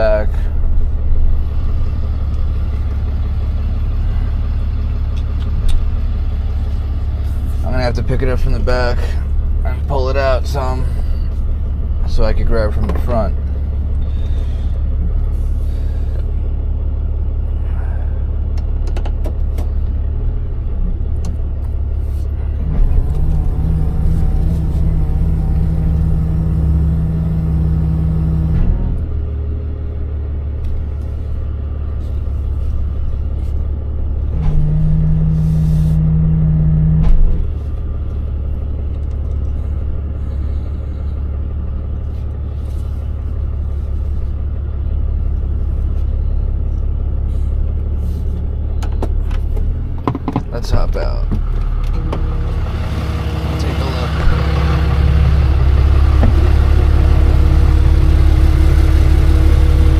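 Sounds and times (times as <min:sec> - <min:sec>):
truck engine rumbling: 0:00.0 - 0:59.9
steady hum: 0:30.6 - 0:59.9.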